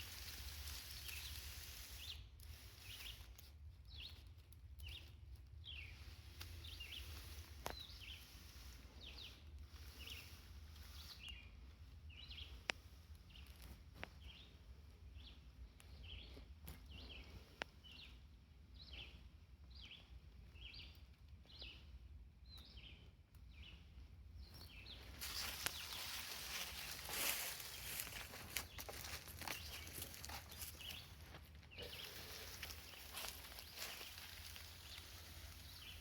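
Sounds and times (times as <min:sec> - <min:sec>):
low outdoor rumble: 0:11.5 - 0:36.0
bird chirping: 0:15.2 - 0:36.0
rustling: 0:25.0 - 0:36.0.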